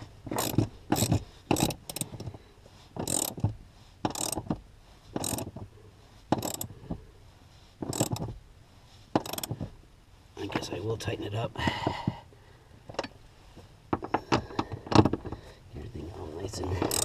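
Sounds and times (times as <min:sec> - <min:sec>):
hand ratchet clicking: 0:00.3 - 0:02.3, 0:03.0 - 0:04.6, 0:05.2 - 0:05.5, 0:06.3 - 0:06.7, 0:07.8 - 0:08.3, 0:09.2 - 0:09.6, 0:16.8 - 0:17.0.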